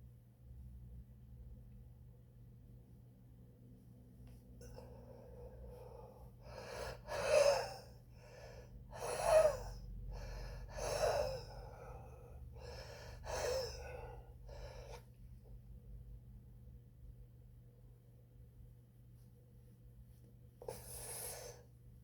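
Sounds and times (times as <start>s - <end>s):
wheezing heavy breathing: 4.8s - 15.0s, 20.6s - 21.6s.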